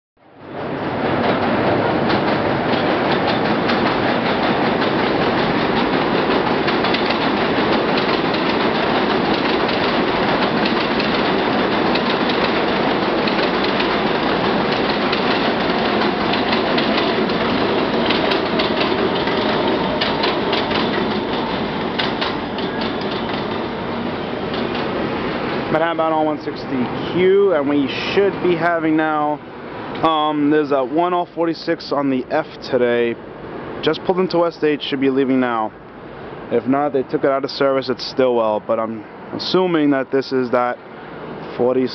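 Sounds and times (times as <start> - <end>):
subway train wheels rumbling on rails: 0.2 - 41.9
clickety-clack over rail joints: 0.6 - 31.3.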